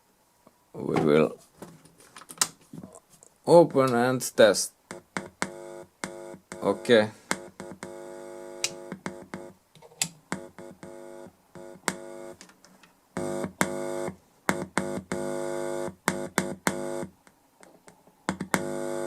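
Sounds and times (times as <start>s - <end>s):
synthesizer-like test tone: 4.9s - 8.1s
sharp clicks and pops: 8.6s - 10.9s, 11.8s - 12.6s, 16.0s - 18.7s.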